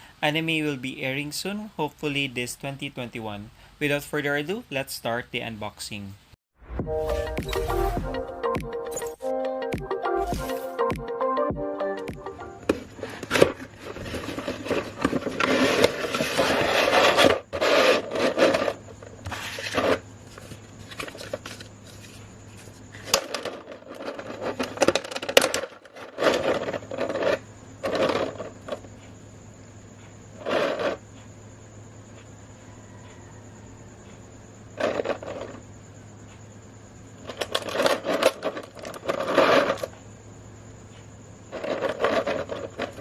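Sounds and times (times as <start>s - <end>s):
packaging rubbing and scraping: 12.6s - 28.5s, 37.3s - 39.9s, 41.5s - 43.0s.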